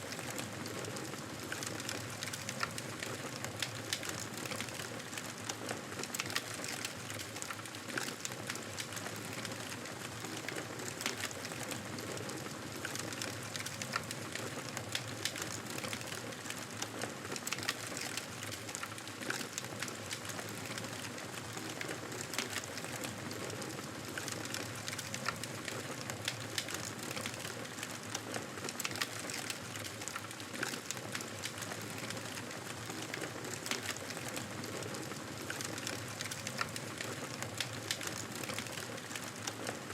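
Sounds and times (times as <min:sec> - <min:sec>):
fire crackles and pops: 0:00.0 - 0:39.9.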